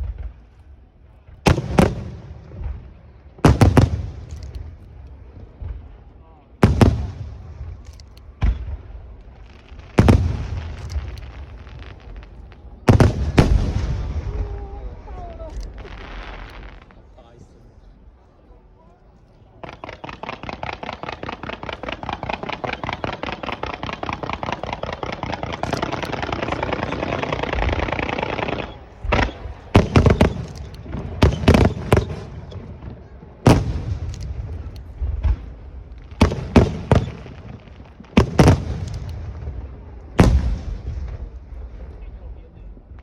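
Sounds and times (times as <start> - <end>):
rapid firework cracks: 1.3 - 5.9, 6.6 - 17.0, 19.6 - 41.7
firework shell bursts rumbling: 6.6 - 14.6, 19.6 - 41.8.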